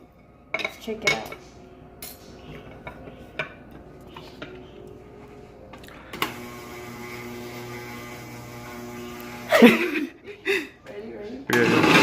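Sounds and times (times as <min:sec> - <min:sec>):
kitchen utensils clinking: 0:00.0 - 0:04.7, 0:11.5 - 0:12.0
electric blender humming: 0:06.1 - 0:09.8, 0:11.5 - 0:12.0.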